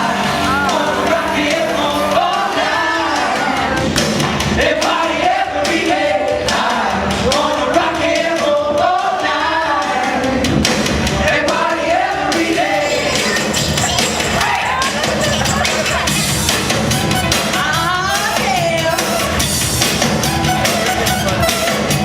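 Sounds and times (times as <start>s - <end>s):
person singing: 0.0s - 3.9s
band playing: 0.0s - 22.0s.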